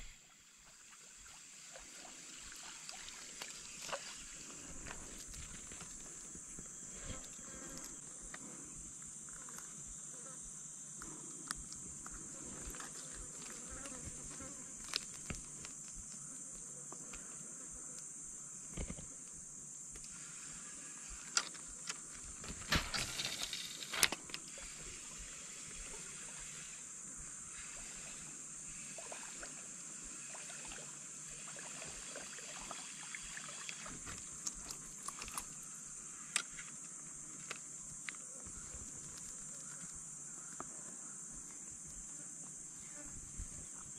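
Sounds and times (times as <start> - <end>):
high-pitched insect chorus: 0.0 - 43.9.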